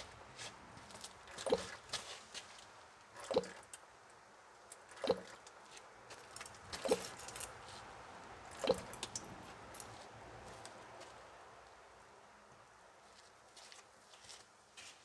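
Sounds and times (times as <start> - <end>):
engine oil glugging from drain hole: 1.3 - 1.9, 3.2 - 3.8, 4.8 - 5.5, 6.3 - 7.6, 8.5 - 9.9.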